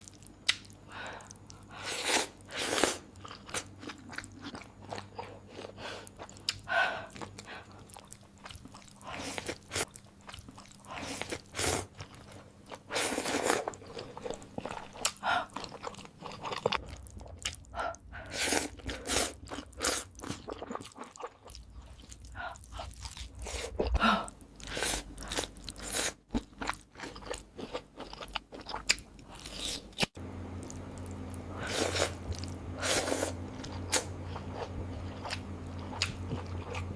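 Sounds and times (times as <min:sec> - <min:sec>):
person chewing crunchy food: 0:00.0 - 0:36.9.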